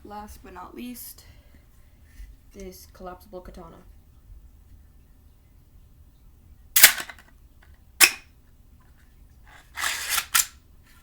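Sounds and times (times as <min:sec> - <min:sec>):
plastic sliding rattle: 0:09.5 - 0:10.5.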